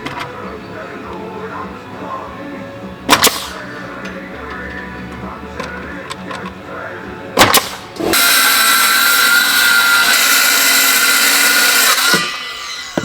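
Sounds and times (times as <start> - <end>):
power tool running: 7.4 - 13.0.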